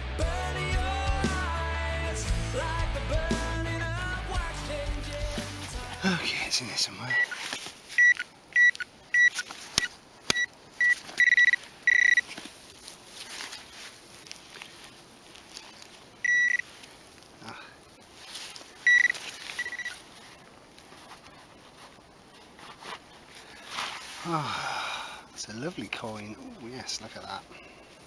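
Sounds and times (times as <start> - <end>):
high-pitched short beeps: 8.0 - 12.2, 16.3 - 16.6, 18.9 - 20.0.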